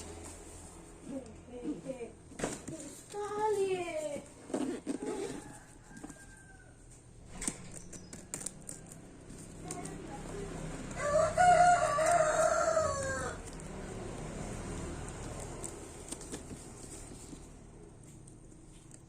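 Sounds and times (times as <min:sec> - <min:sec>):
rooster crowing: 0:05.1 - 0:07.0, 0:10.9 - 0:13.5.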